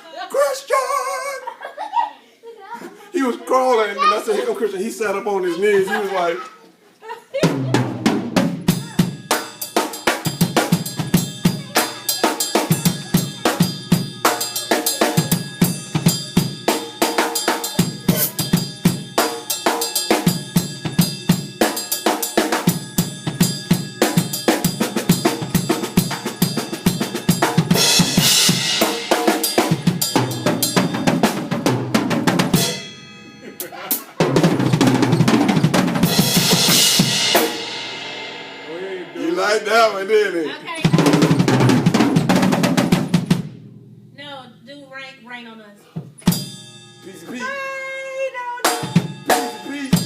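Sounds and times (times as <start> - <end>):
snare and bass drum strokes: 7.4 - 20.4, 34.2 - 39.8, 40.9 - 43.6
cymbals and hi-hat: 8.5 - 33.2, 34.8 - 40.2, 46.1 - 47.2, 48.7 - 50.0.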